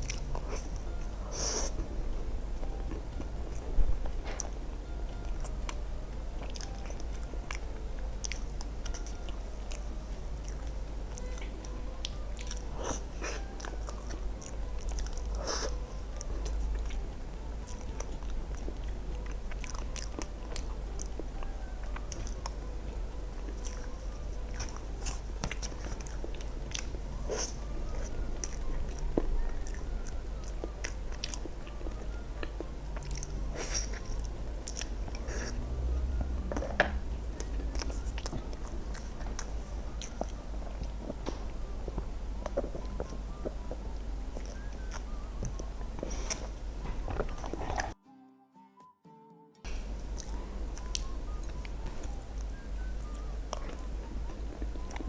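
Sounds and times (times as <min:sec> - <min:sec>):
person chewing with wet smacks: 0:00.0 - 0:00.7, 0:06.4 - 0:07.6, 0:32.5 - 0:35.6, 0:37.4 - 0:41.4, 0:42.4 - 0:46.5
steady low hum: 0:00.0 - 0:48.0, 0:49.6 - 0:55.0.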